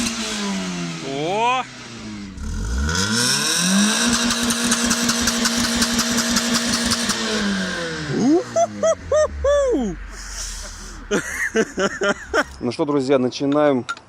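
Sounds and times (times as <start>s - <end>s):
car engine revving: 0.0s - 12.6s.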